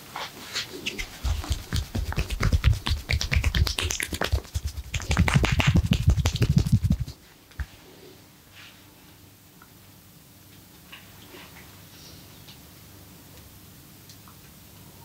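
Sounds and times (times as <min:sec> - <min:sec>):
hand slaps of percussive massage: 0:00.9 - 0:07.7.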